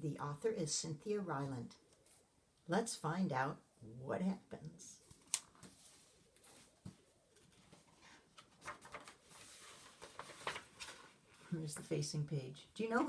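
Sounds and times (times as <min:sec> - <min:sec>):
paper pages rustling: 0:05.0 - 0:11.5.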